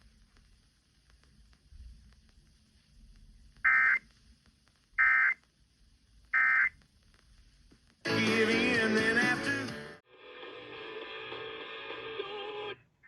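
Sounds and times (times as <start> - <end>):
loud music: 8.1 - 12.0.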